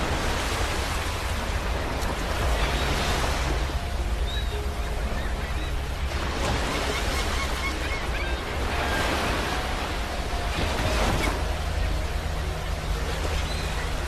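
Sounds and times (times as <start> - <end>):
sea waves breaking on beach: 0.0 - 14.0.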